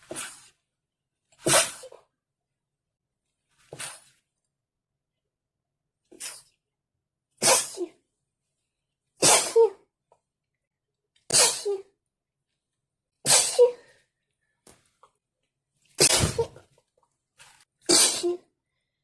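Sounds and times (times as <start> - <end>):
person sneezing: 1.4 - 2.0, 7.4 - 8.0, 9.2 - 9.9, 11.3 - 11.9, 13.2 - 14.0, 16.0 - 16.6, 17.8 - 18.5.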